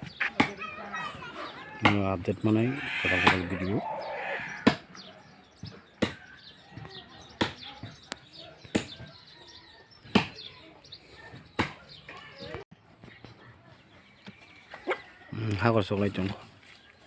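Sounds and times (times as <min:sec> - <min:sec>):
faint birds chirping: 0:00.0 - 0:17.0.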